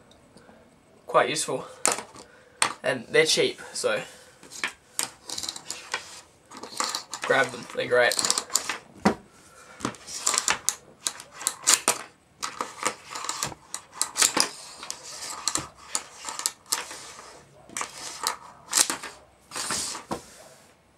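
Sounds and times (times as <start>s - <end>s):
cable rustling: 4.4s - 20.5s
audio cable clicking and rattling: 4.5s - 9.1s, 9.8s - 16.9s, 17.7s - 20.1s.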